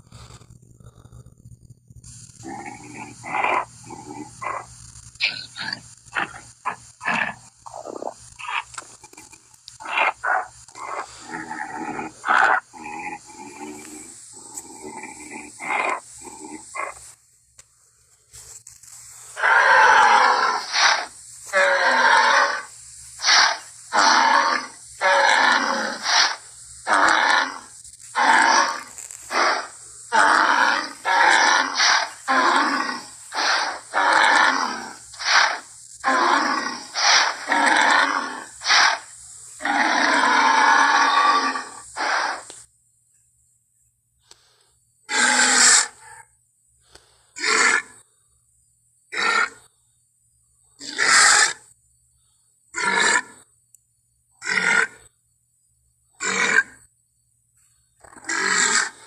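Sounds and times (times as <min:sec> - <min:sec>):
dinosaur calls: 0:02.4 - 0:17.0, 0:19.4 - 0:42.5, 0:45.1 - 0:46.2, 0:50.8 - 0:51.6, 0:58.1 - 0:59.0.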